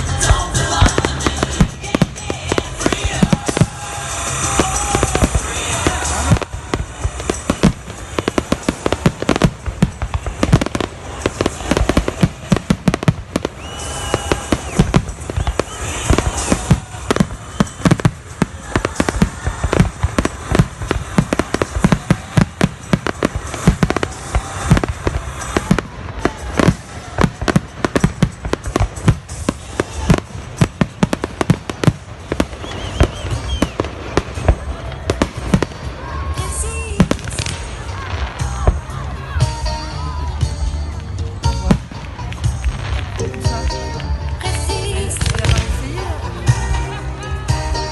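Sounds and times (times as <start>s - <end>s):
firework bursts and crackles: 0.0s - 47.9s
firework whistles: 0.8s - 37.7s.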